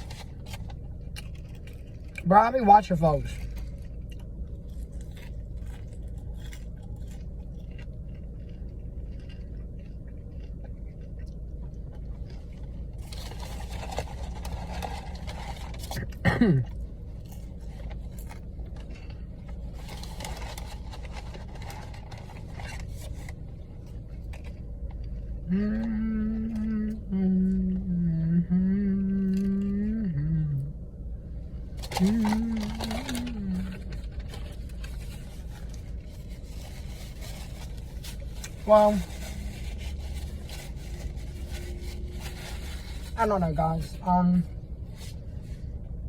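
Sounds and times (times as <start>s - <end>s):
low hum: 0.0s - 46.0s
food wrapper rustling: 12.2s - 16.1s, 17.1s - 24.9s, 31.8s - 44.1s.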